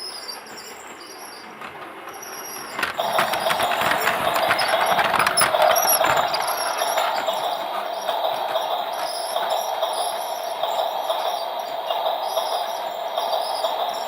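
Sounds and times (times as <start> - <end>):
clicks and rattles: 1.6 - 8.8
toy train motor whirring: 2.1 - 7.9.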